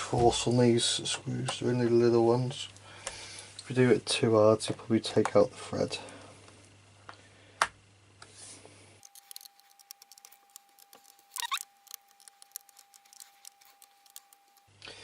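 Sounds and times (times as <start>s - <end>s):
screwdriver clicks and ticks: 9.0s - 14.6s.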